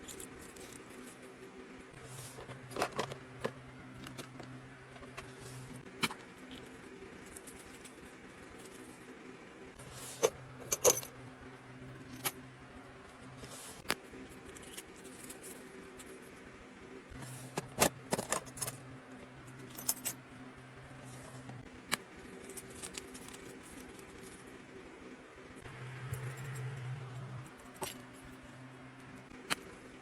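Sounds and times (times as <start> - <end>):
faint steady hum: 0.0 - 30.0
keychains jangling and clinking: 10.6 - 11.1, 19.5 - 20.2.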